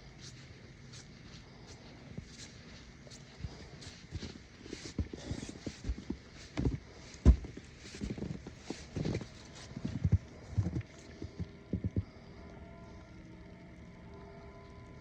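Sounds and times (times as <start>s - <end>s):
footsteps in snow: 0.0s - 12.0s.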